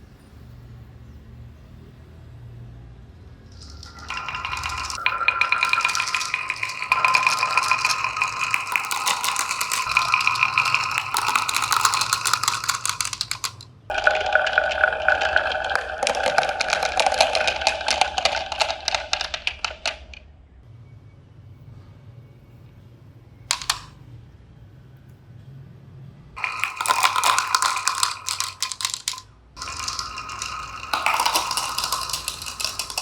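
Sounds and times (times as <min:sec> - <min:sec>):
marbles clattering down wooden run: 0:03.5 - 0:20.2, 0:23.5 - 0:23.9, 0:26.4 - 0:33.0.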